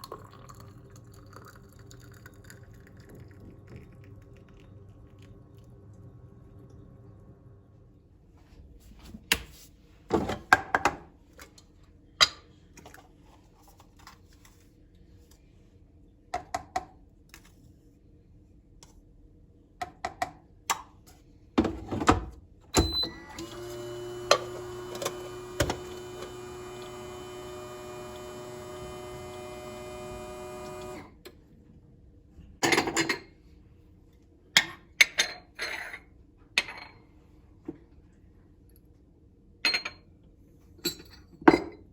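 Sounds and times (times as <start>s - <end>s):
appliance motor humming: 22.8s - 31.2s.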